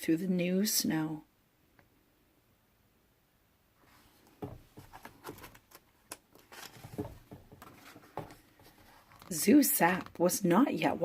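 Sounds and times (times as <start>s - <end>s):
book pages turning: 3.9s - 10.2s.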